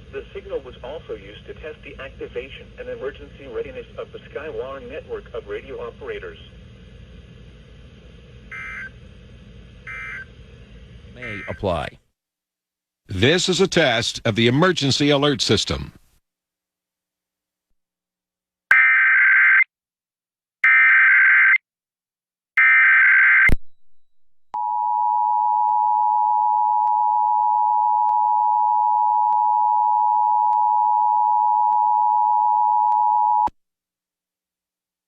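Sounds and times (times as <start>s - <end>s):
screeching digital data tones: 11.2s - 11.6s.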